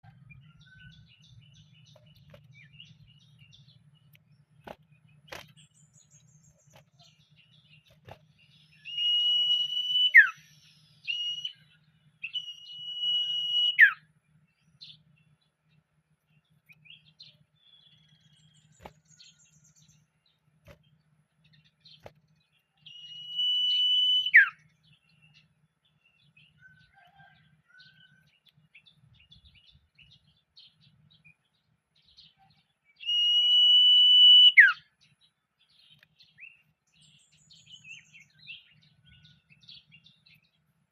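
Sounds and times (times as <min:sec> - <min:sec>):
bird chirping: 0:00.0 - 0:40.9
bird whistling: 0:08.7 - 0:14.1, 0:22.8 - 0:24.7, 0:33.0 - 0:34.9.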